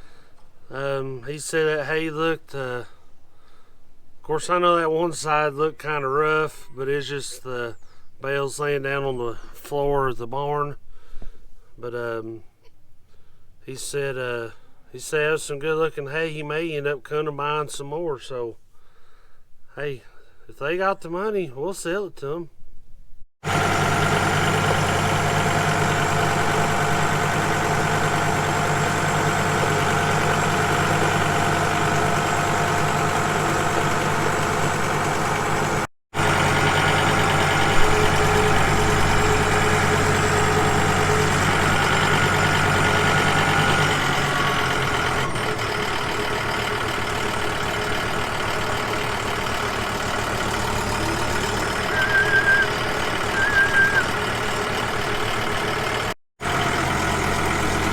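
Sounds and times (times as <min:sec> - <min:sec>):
vehicle engine running: 0:23.4 - 0:57.9.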